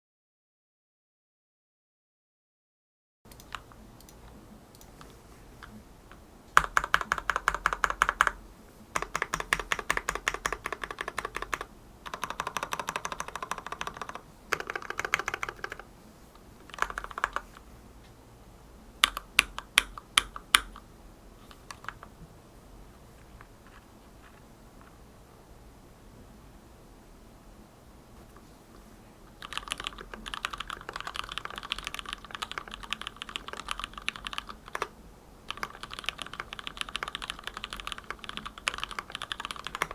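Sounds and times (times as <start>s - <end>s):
mechanical keyboard typing: 3.3s - 5.0s, 6.6s - 8.4s, 9.0s - 15.9s, 16.6s - 17.6s, 19.0s - 20.8s, 21.5s - 22.1s, 29.4s - 34.9s, 35.5s - 39.9s.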